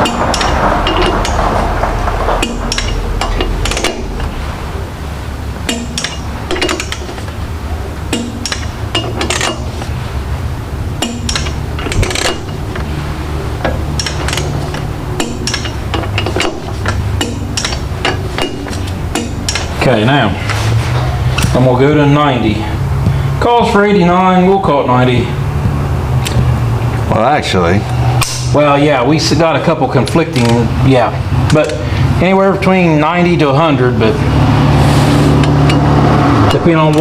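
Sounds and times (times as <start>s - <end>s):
steady low hum: 0.0s - 37.0s
metallic pop of bolt: 5.7s - 7.2s, 8.1s - 9.7s, 11.0s - 12.6s, 13.6s - 19.7s.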